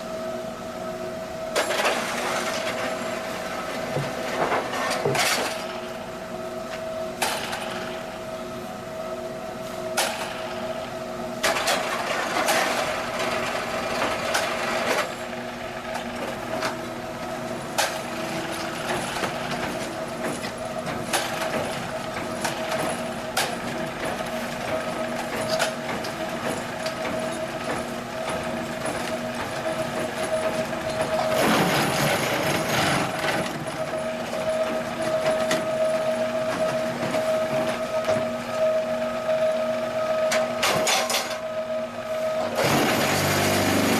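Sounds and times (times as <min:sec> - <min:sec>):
loud noisy rattle: 0:31.2 - 0:33.6, 0:42.6 - 0:43.9.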